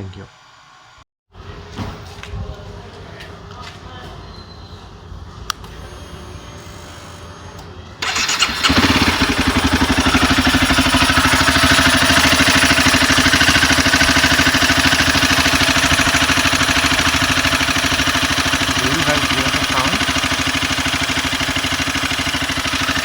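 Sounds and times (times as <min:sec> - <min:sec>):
motorcycle engine starting and idling: 0:05.5 - 0:23.0.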